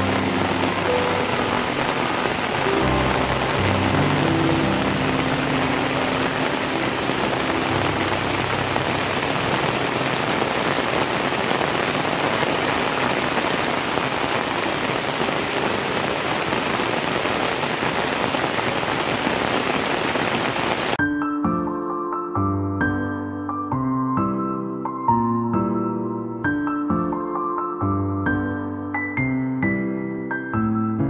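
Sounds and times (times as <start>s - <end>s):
background music: 0.0s - 10.5s, 21.0s - 31.0s
steady rain falling: 0.0s - 21.0s.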